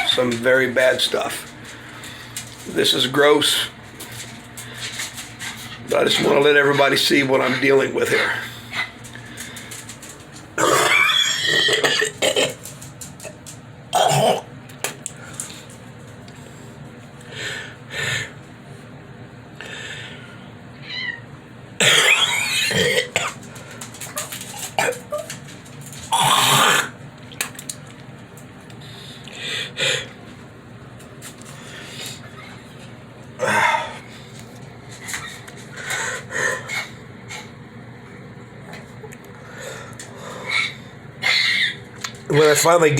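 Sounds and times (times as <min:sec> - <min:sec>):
man coughing and hacking: 0:13.9 - 0:14.5, 0:21.8 - 0:23.4.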